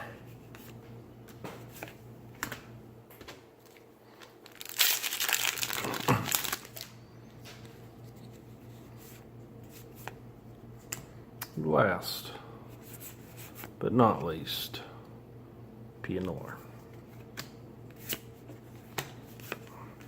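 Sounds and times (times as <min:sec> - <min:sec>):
foil wrapper crinkling and tearing: 0:04.2 - 0:07.0.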